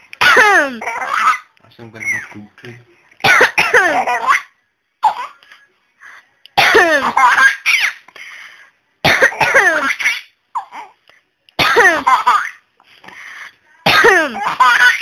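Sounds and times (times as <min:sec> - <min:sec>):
woman coughing: 0:00.2 - 0:01.0, 0:03.2 - 0:04.4, 0:06.6 - 0:07.2, 0:09.0 - 0:09.9, 0:11.6 - 0:12.6, 0:13.8 - 0:14.9
baby laughing: 0:00.5 - 0:02.4, 0:03.8 - 0:04.5, 0:06.9 - 0:08.1, 0:09.6 - 0:11.0, 0:14.3 - 0:15.0.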